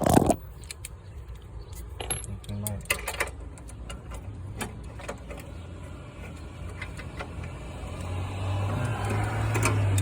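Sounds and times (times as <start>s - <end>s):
metal tools clinking: 1.7s - 5.5s.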